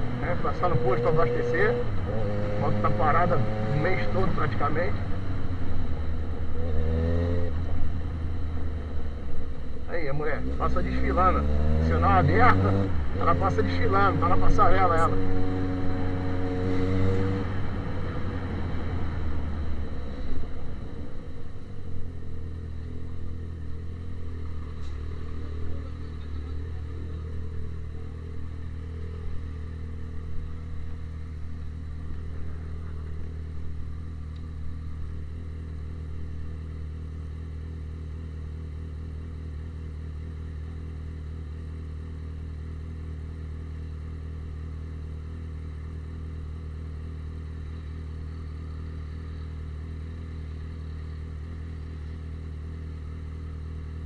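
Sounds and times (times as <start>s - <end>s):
motorcycle engine idling: 0.0s - 16.8s, 17.4s - 54.0s.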